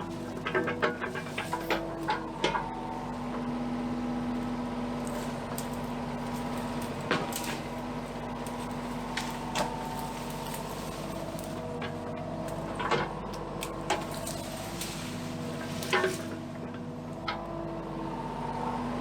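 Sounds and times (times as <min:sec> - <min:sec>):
engine running: 0:00.0 - 0:19.0.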